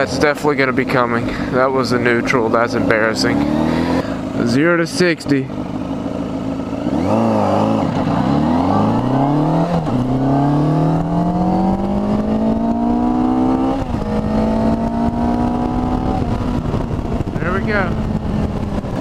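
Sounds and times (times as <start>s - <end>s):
motorcycle engine accelerating: 0.0s - 19.0s
wind noise on microphone: 7.9s - 19.0s.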